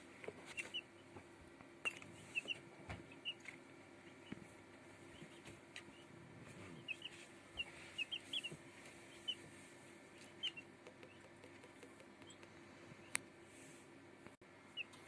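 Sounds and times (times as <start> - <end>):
chicks peeping: 0.2 - 13.3, 14.7 - 15.0.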